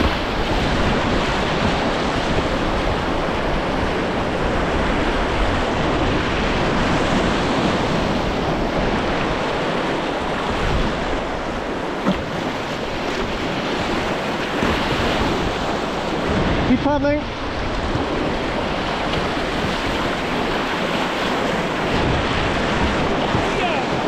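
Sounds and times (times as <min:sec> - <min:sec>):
wind buffeting microphone: 0:00.0 - 0:24.0
river white water rushing: 0:18.5 - 0:24.0.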